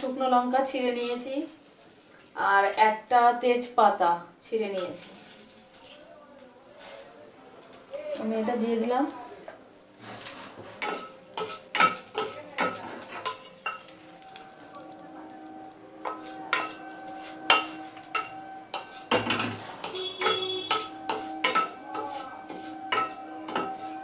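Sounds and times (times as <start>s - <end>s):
spices sizzling in oil: 4.5s - 24.0s
metal spatula scraping a pan: 10.0s - 14.5s, 15.7s - 24.0s.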